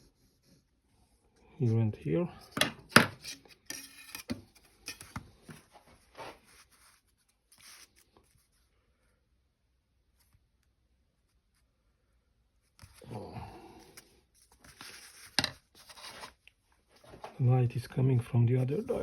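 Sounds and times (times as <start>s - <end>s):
drawing tools scratching: 3.1s - 5.6s.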